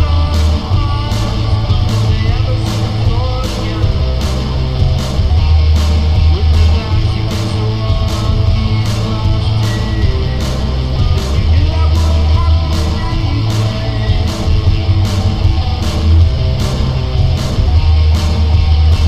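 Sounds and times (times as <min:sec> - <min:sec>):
guitar rock music: 0:00.0 - 0:19.0
steady drum beat: 0:00.0 - 0:19.0.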